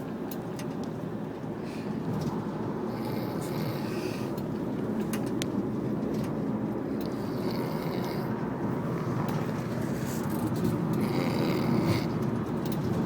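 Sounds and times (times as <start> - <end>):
road and engine noise inside car: 0.0 - 13.0
man snoring: 2.9 - 4.3, 7.0 - 8.4, 11.0 - 12.2.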